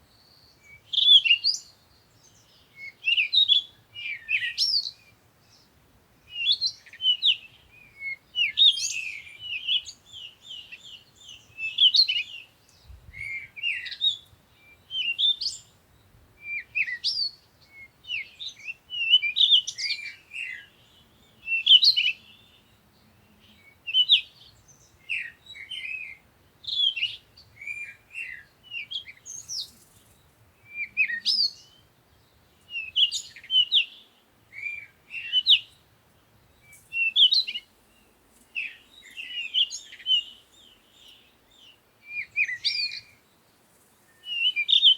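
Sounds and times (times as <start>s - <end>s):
songbird chirpy song: 0.0s - 44.9s.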